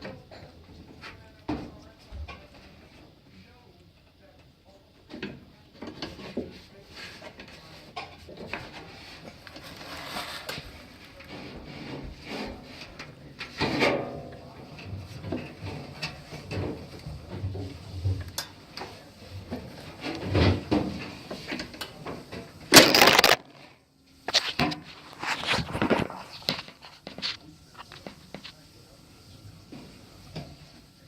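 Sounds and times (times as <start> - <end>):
parts knocking and rattling: 22.7 - 23.5.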